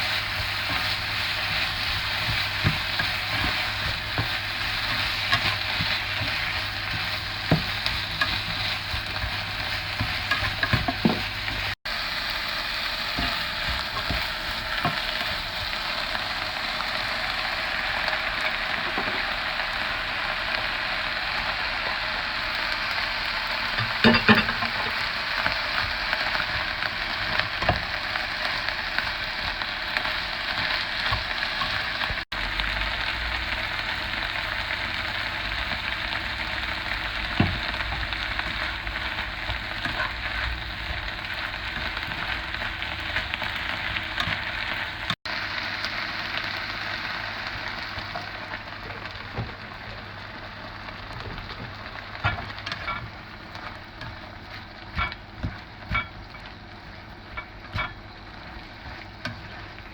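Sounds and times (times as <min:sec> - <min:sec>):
noodles sizzling in a pan: 0:00.0 - 0:59.9.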